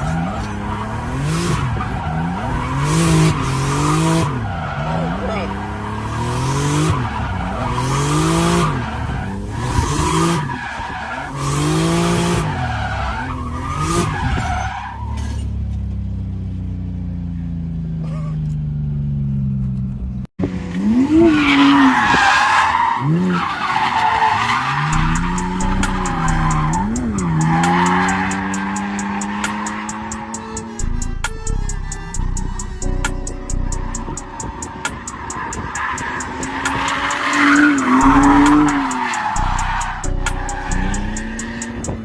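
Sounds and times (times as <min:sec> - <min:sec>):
car engine revving: 0:00.0 - 0:42.0
tyres squealing: 0:21.3 - 0:42.0.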